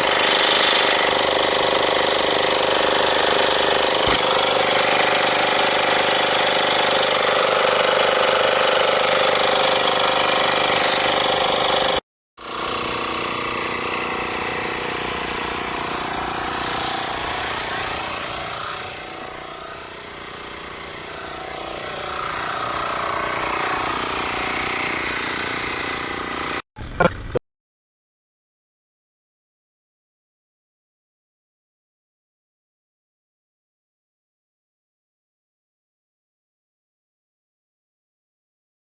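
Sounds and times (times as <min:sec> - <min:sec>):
portable air compressor running: 0:00.0 - 0:26.6.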